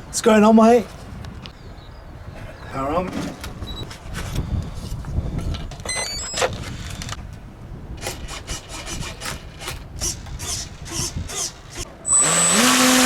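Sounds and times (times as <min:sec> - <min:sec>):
short electronic beeps: 0:12.0 - 0:12.9.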